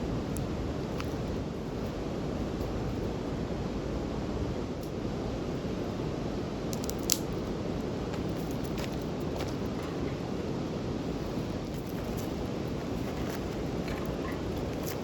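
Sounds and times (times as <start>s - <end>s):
wood fire crackling pops: 6.7s - 7.5s.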